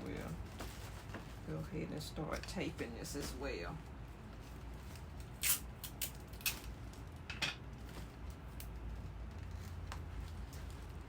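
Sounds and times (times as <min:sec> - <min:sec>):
adhesive tape tearing: 0:05.4 - 0:06.7.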